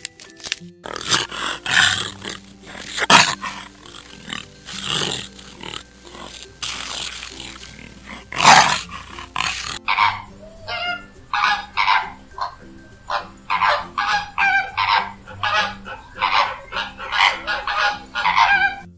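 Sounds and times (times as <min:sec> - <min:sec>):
faint background music: 0:00.0 - 0:18.9
large animal roaring: 0:00.8 - 0:18.8.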